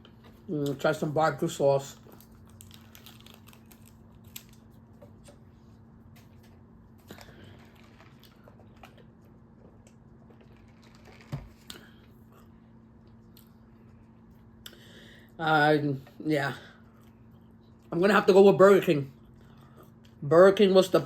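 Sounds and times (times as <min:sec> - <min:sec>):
chewing and eating: 0:01.9 - 0:14.8.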